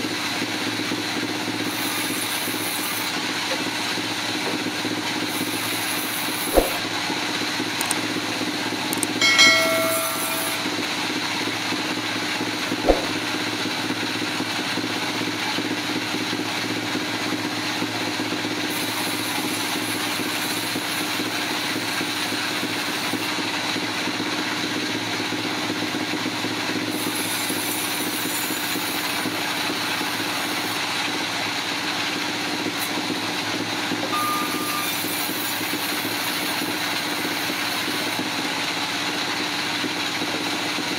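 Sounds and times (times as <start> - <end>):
sharp click: 8.9 - 10.9
brief tone: 9.2 - 11.0, 34.1 - 35.5.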